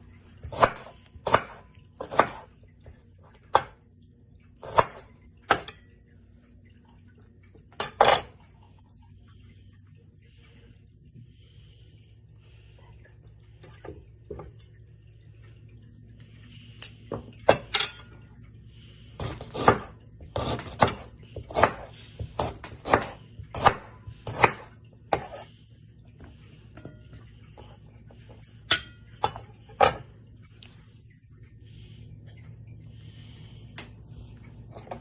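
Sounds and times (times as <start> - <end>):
knife chopping on a cutting board: 0.4 - 2.5, 4.6 - 5.7, 19.2 - 25.4.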